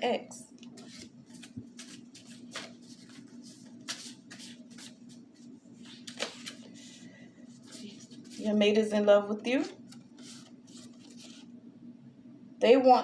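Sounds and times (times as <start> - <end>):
faint steady hum: 0.0 - 13.0
cards being shuffled: 0.7 - 9.0, 9.6 - 11.5.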